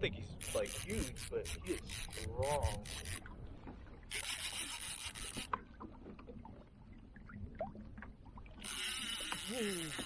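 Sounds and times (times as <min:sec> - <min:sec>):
fishing reel drag buzzing: 0:00.4 - 0:03.2, 0:04.1 - 0:05.5, 0:08.6 - 0:10.0.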